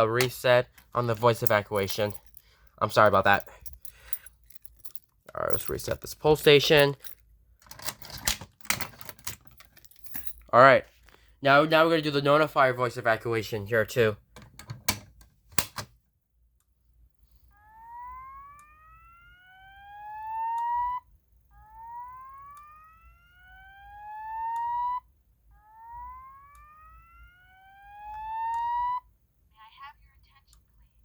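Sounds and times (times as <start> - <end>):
rising whoop evacuation tone: 17.6 - 21.0, 21.6 - 25.0, 25.6 - 29.0.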